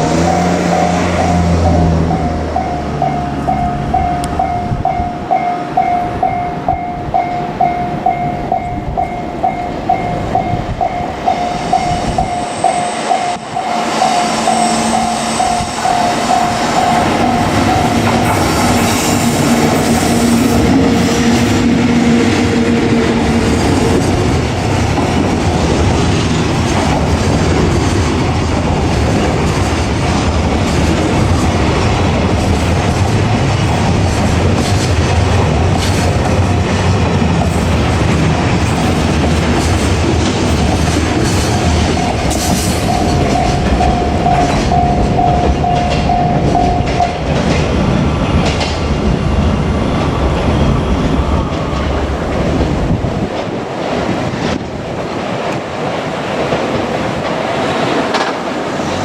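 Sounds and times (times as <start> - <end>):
locomotive motor hum: 0.0 - 6.8, 7.6 - 54.8
freight train rumbling past: 0.0 - 59.0
level crossing bell ringing: 0.1 - 18.2, 41.8 - 47.2.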